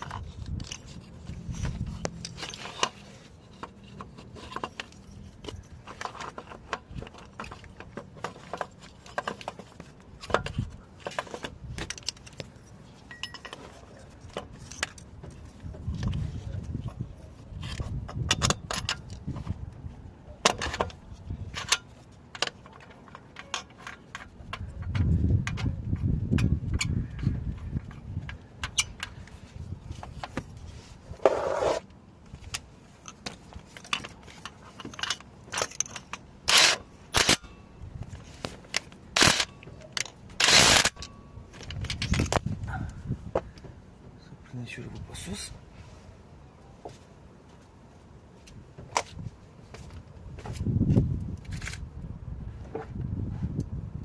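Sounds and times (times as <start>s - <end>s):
metal tools clinking and scraping: 0.0s - 19.6s, 20.3s - 30.4s, 32.8s - 42.5s.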